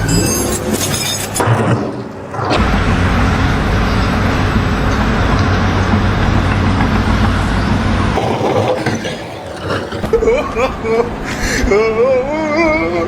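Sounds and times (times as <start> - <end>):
road noise: 1.3 - 10.2.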